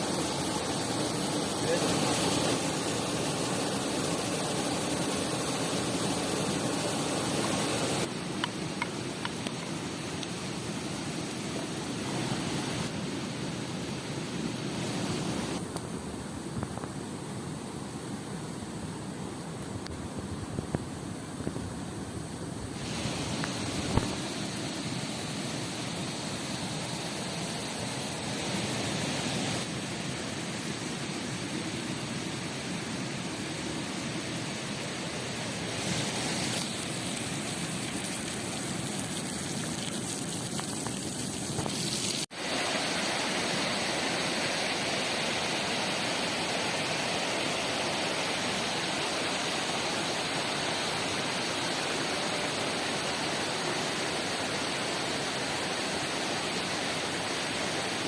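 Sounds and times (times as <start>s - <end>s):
river water rushing: 0.0s - 8.1s, 42.2s - 58.0s.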